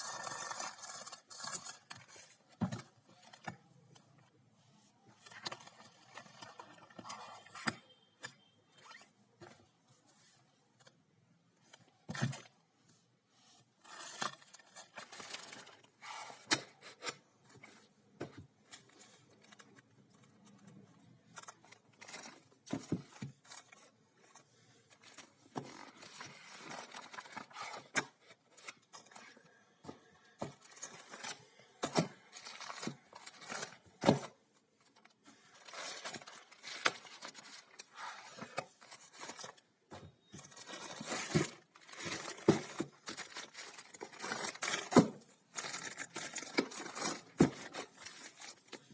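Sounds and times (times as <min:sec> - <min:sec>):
packaging rustling and scraping: 0:13.6 - 0:29.5, 0:30.4 - 0:48.9.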